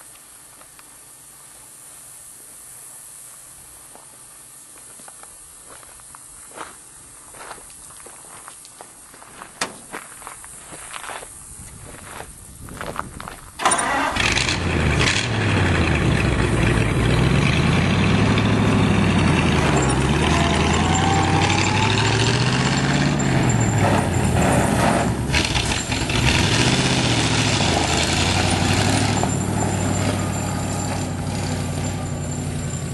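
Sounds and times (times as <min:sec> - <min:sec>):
truck engine starting and revving: 0:13.6 - 0:32.9.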